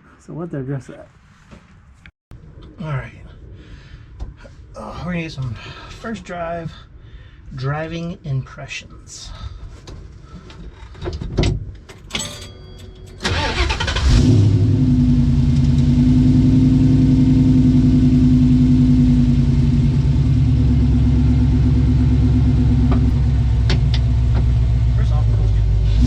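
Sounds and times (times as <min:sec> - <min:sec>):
car engine starting and idling: 0:11.8 - 0:26.0.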